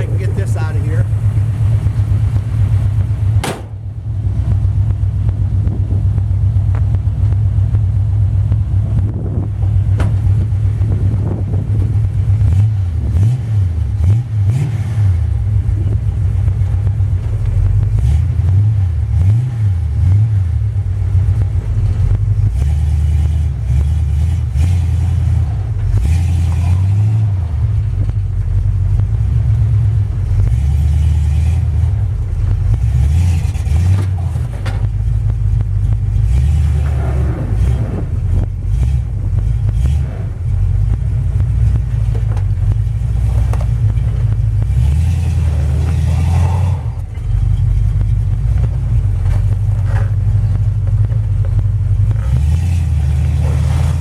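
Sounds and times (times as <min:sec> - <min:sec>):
pickup truck engine revving: 0:00.0 - 0:54.0
sharp click: 0:03.4 - 0:03.8.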